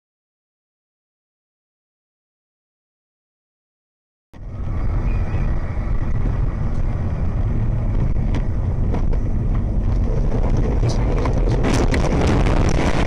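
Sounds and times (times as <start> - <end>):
car engine and road noise: 4.4 - 13.0.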